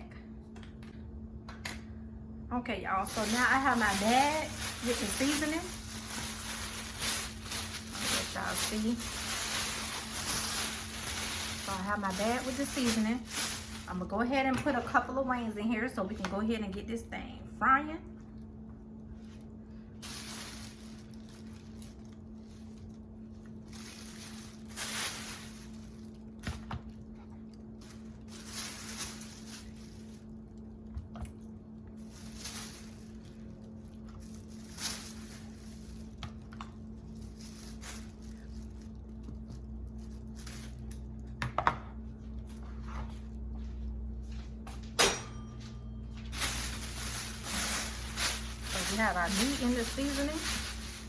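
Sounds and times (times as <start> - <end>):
steady low hum: 0.0 - 51.0
plastic bag rustling: 2.9 - 15.3, 19.1 - 41.2, 46.1 - 51.0.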